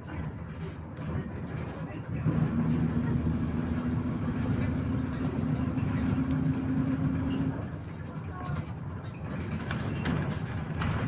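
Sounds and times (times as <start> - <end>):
bus engine hum: 0.0 - 11.0.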